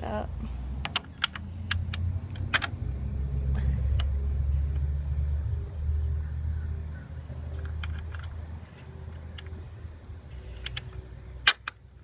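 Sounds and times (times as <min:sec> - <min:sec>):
steady low rumble: 0:00.0 - 0:12.0
light metallic clicks: 0:00.8 - 0:02.8, 0:10.4 - 0:11.8.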